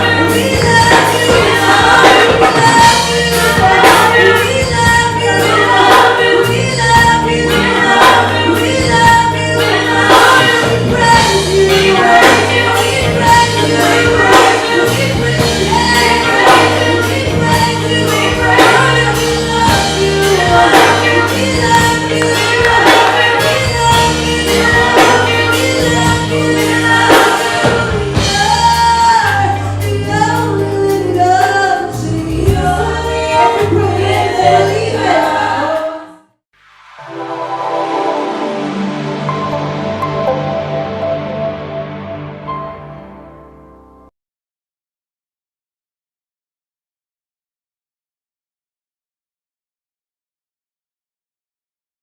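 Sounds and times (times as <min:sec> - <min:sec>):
sustained bass notes: 0:00.0 - 0:31.4, 0:37.0 - 0:44.1
steady drum beat: 0:00.0 - 0:35.4
gospel choir singing: 0:00.0 - 0:36.4.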